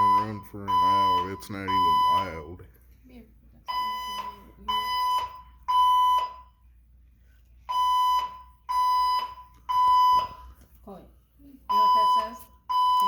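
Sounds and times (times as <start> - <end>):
fire alarm beeps: 0.0 - 2.5, 3.6 - 6.6, 7.6 - 10.6, 11.7 - 13.0.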